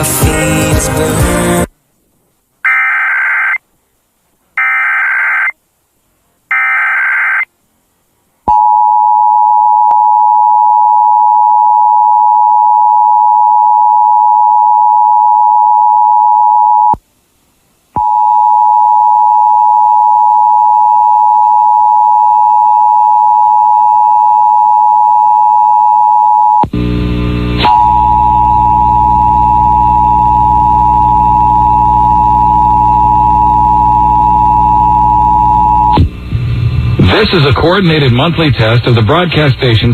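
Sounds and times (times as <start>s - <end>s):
digital data bursts: 4.6s - 5.6s.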